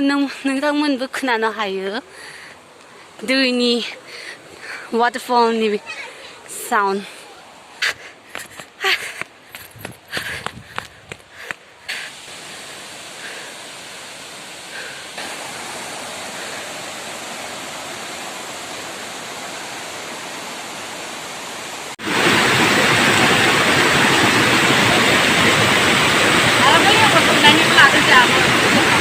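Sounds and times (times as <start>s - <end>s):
waterfall rushing: 11.9s - 29.0s.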